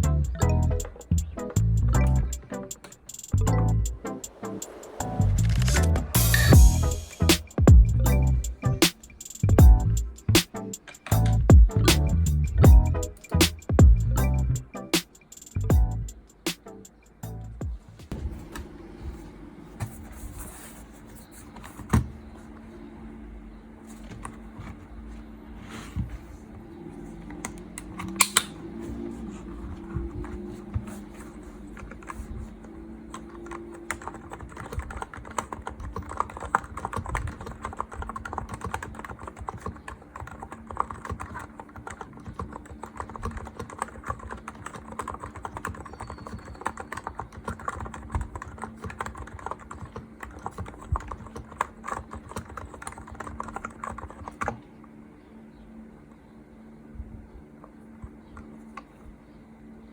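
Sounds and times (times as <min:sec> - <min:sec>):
typing on keyboard: 0:00.0 - 0:06.1, 0:08.8 - 0:17.0, 0:29.6 - 0:54.6.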